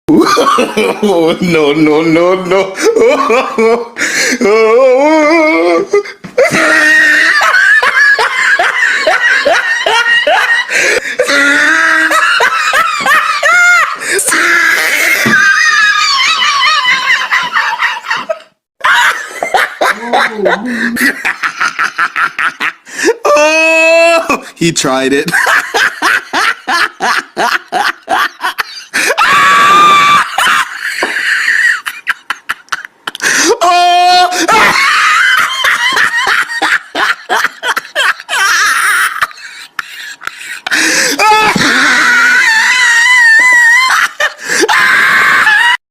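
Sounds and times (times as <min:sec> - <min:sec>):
person laughing loudly: 0:00.1 - 0:01.6, 0:02.2 - 0:24.5, 0:25.3 - 0:45.8.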